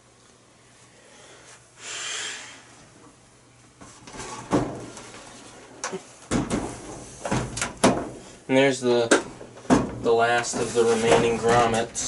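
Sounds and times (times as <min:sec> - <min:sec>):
box fan scraping rush: 0:10.2 - 0:12.0.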